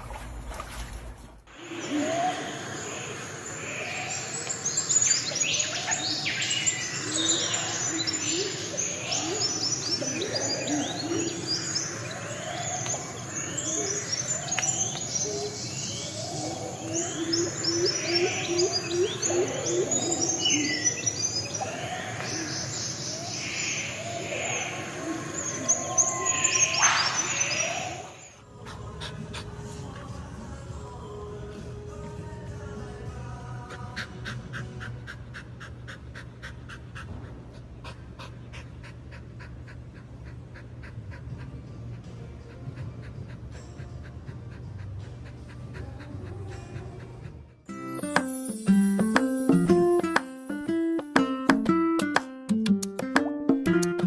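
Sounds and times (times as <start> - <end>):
many birds chirping: 1.5 - 28.4.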